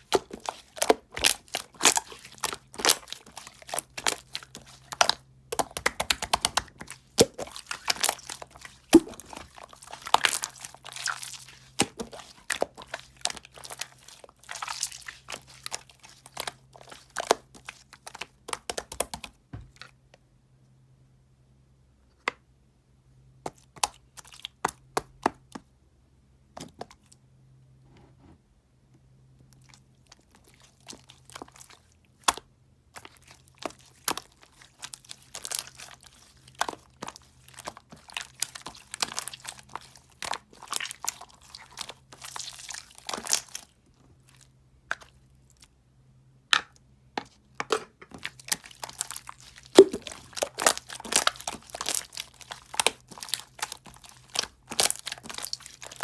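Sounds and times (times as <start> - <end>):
faint steady hum: 0.0 - 56.0
dense crackling and crinkling: 48.1 - 56.0.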